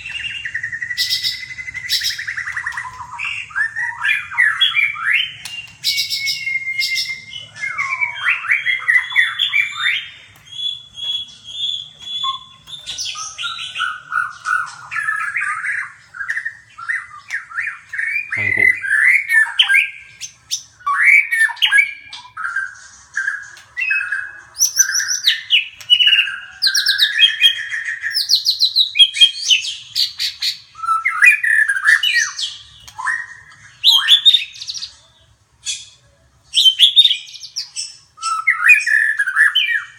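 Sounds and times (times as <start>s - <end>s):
songbirds warbling and squawking: 0.0s - 39.9s.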